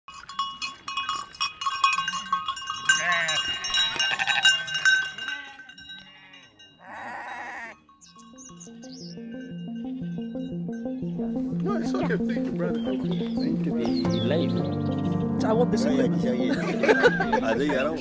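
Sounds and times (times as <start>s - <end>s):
livestock bells clanking: 0.1s - 10.9s
animals bleating: 2.2s - 7.9s, 8.6s - 10.0s.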